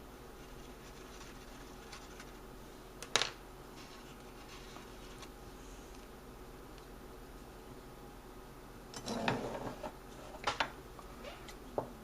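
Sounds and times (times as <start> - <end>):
paper rustling: 0.4 - 2.4, 3.7 - 6.0.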